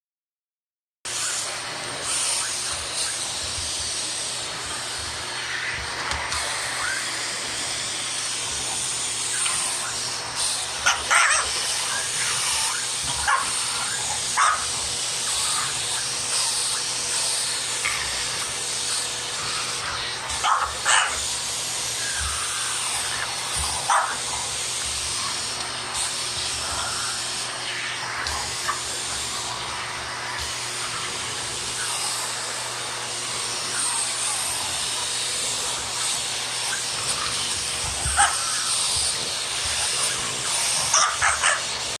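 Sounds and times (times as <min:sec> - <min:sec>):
vacuum cleaner running: 0:01.1 - 0:42.0
dog barking: 0:10.8 - 0:14.8, 0:20.3 - 0:21.3, 0:23.2 - 0:24.4, 0:38.0 - 0:38.7, 0:40.8 - 0:41.7.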